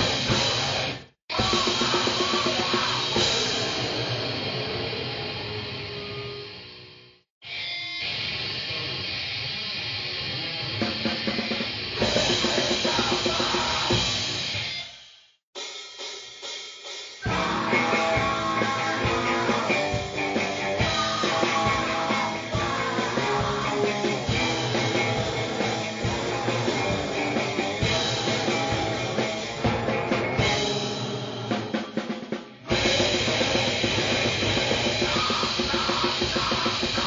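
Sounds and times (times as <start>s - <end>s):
shouted vocals: 0.0s - 3.4s, 12.0s - 14.2s, 17.3s - 30.2s, 34.4s - 37.0s
drums: 0.0s - 6.8s, 7.4s - 37.0s
distorted guitar: 0.0s - 15.0s, 17.2s - 37.0s.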